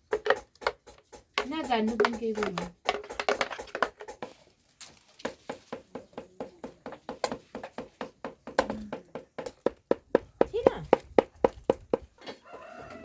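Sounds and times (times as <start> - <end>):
knife chopping on cutting board: 0.1 - 4.3.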